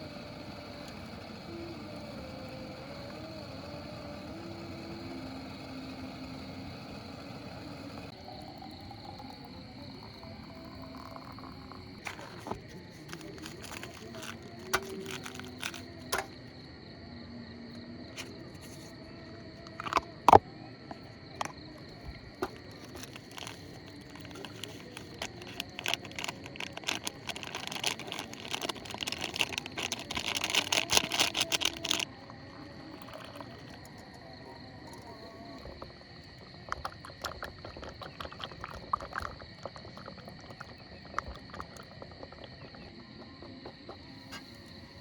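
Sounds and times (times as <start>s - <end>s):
crickets chirring: 0.0s - 45.0s
clicking and rustling: 12.0s - 16.4s, 21.4s - 32.1s.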